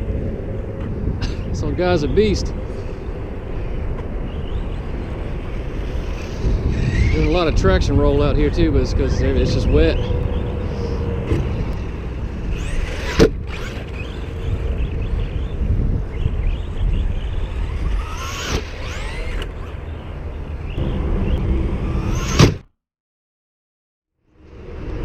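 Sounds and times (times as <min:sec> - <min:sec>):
electric motor whining up: 0:09.5 - 0:19.9, 0:20.7 - 0:22.7.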